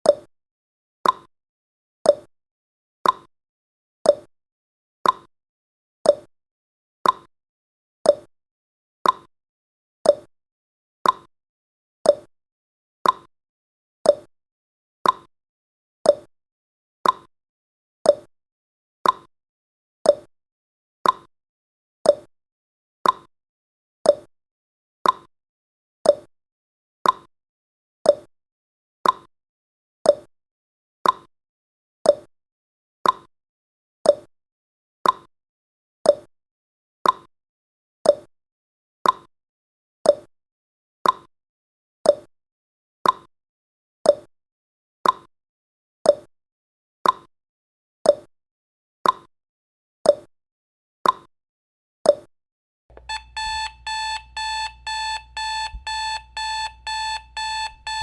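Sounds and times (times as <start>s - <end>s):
clock ticking: 52.9s - 58.0s
rapid alarm clock beeping: 52.9s - 58.0s.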